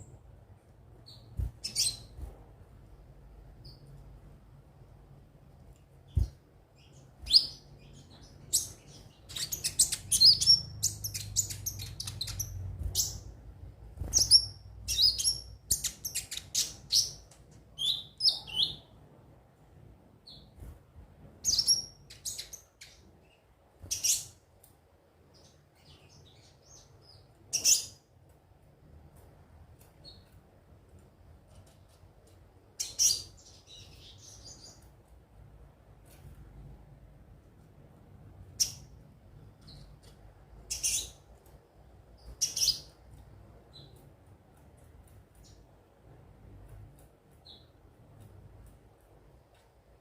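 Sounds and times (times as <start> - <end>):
sunbird chirping: 6.1 - 13.4, 14.0 - 19.0, 21.4 - 24.4, 32.8 - 34.9, 40.7 - 41.2, 42.2 - 43.0.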